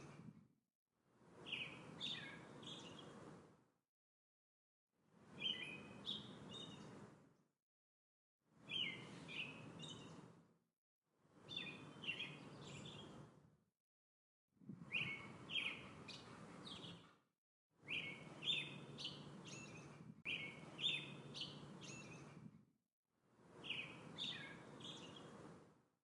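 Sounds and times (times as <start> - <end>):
songbird chirping: 1.4 - 3.3, 5.3 - 7.1, 8.7 - 10.3, 11.4 - 13.3, 14.9 - 17.2, 17.9 - 22.4, 23.5 - 25.4.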